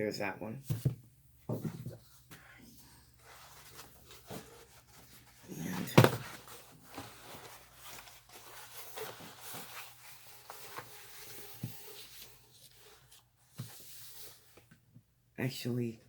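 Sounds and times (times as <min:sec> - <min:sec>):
paper rustling: 0:03.2 - 0:14.4.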